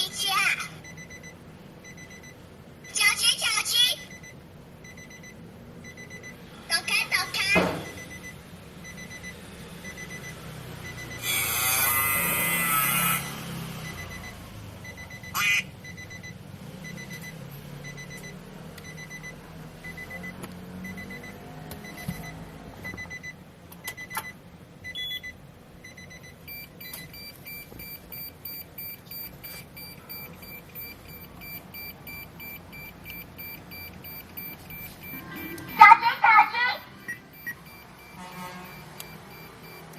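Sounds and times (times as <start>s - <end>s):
fast beeping in several tones: 24.8s - 39.9s
short high beep: 26.5s - 39.9s
loud electronic sound effect: 34.9s - 37.1s.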